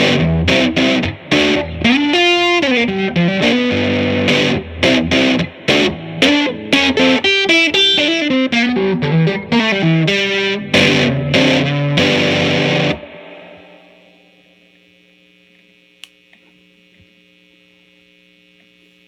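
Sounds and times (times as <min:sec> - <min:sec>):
electric guitar notes and chords: 0:00.0 - 0:14.3
faint amp hum: 0:00.0 - 0:19.0.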